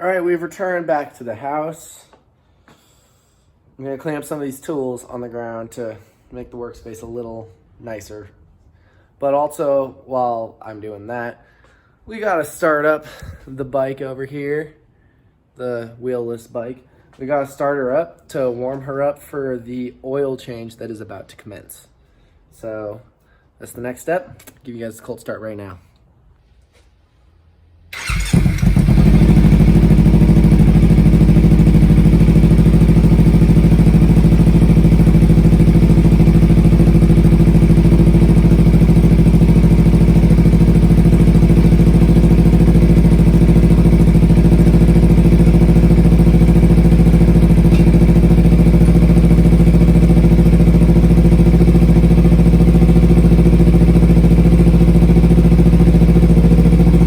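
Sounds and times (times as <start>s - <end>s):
motorcycle engine idling: 28.0s - 57.0s.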